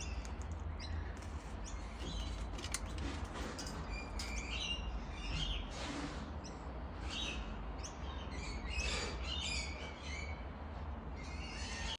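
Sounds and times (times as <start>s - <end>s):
birds chirping: 0.0s - 3.0s, 3.6s - 5.7s.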